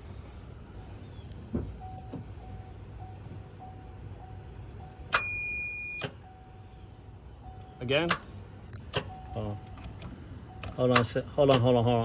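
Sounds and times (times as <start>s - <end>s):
faint warning chime: 1.8s - 8.0s, 9.1s - 9.8s
loud electronic beep: 5.2s - 6.1s.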